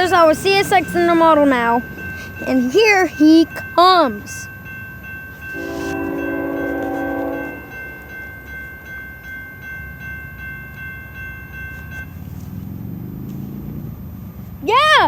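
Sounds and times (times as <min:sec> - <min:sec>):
high ringing bell: 0:00.0 - 0:12.2
train rumble: 0:00.0 - 0:15.0
locomotive air horn: 0:05.6 - 0:08.0.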